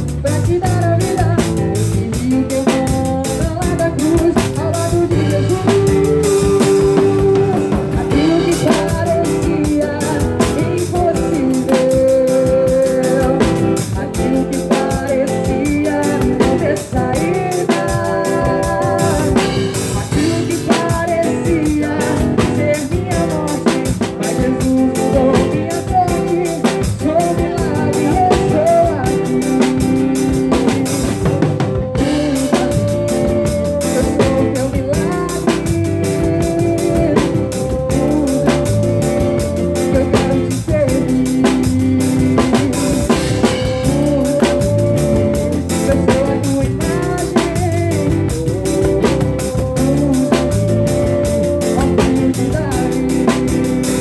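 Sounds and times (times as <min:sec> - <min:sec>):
drum kit beat: 0:00.0 - 0:54.0
live band playing: 0:00.0 - 0:54.0.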